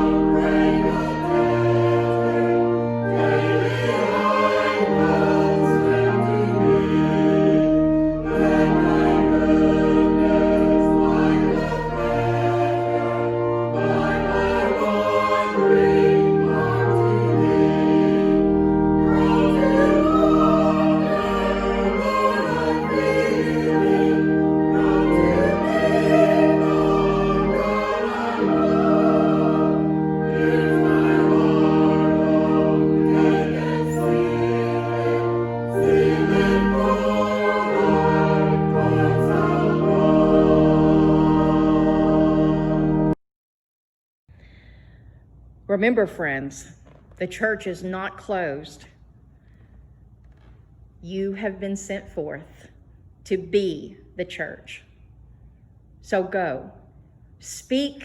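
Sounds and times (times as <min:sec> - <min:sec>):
choir singing a slow hymn: 0:00.0 - 0:43.2
sustained accompanying chords: 0:00.0 - 0:43.2.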